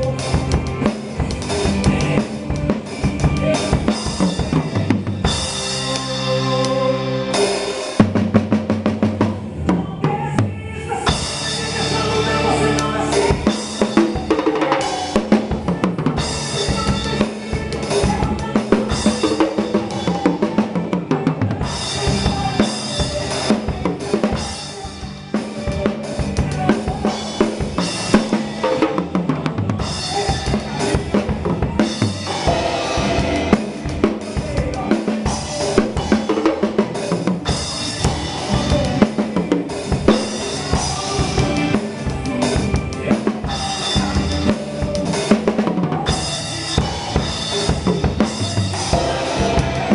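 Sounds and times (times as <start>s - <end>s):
drum kit beat with rimshots: 0.0s - 49.9s
instrumental gospel music: 0.0s - 49.9s.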